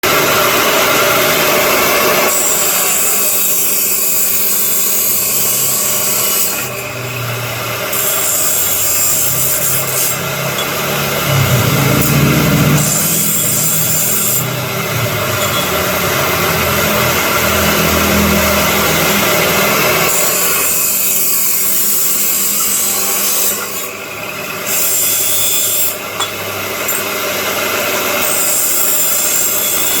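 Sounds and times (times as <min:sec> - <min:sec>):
cut-off saw grinding steel: 0:00.0 - 0:30.0.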